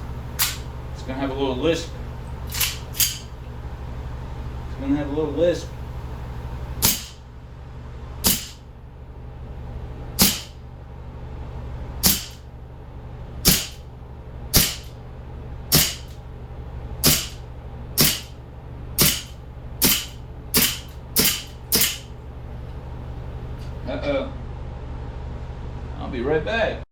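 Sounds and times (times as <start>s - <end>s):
air pistol firing sharp pops: 0.4s - 0.7s, 2.5s - 3.4s, 6.8s - 7.2s, 8.2s - 8.7s, 10.2s - 10.6s, 12.0s - 12.4s, 13.4s - 13.9s, 14.5s - 15.0s, 15.7s - 16.2s, 17.0s - 17.4s, 18.0s - 18.4s, 19.0s - 22.1s.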